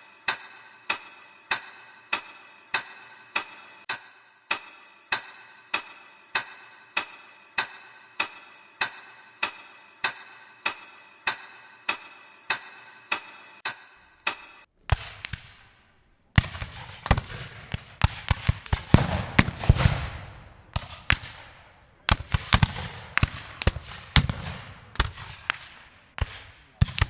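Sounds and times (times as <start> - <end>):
fireworks banging and crackling: 14.8 - 15.8, 16.4 - 27.0.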